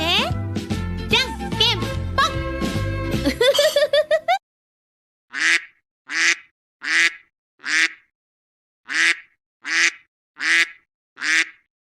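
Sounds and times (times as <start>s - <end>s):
nasal quack-like call: 5.3s - 8.1s, 8.9s - 11.7s.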